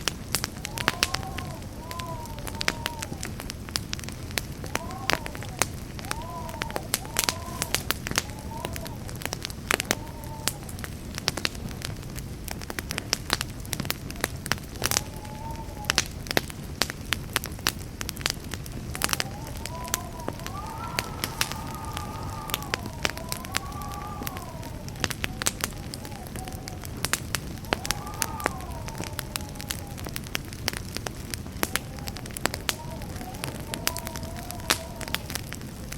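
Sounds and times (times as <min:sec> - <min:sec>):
campfire crackling and popping: 0:00.0 - 0:35.9
low rumble of flame: 0:00.0 - 0:35.9
wavering whistle: 0:04.7 - 0:10.6, 0:19.0 - 0:30.2.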